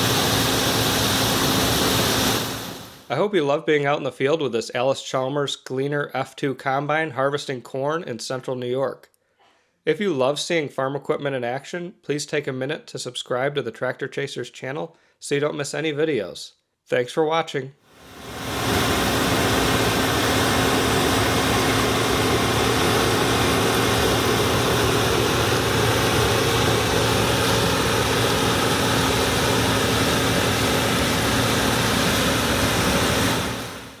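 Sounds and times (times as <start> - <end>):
combine harvester drone: 0.0 - 3.0, 18.0 - 34.0.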